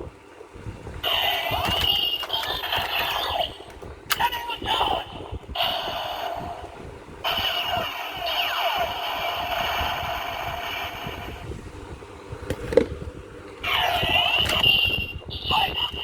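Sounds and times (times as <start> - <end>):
gliding electronic toy tones: 1.0 - 11.5, 13.6 - 16.0.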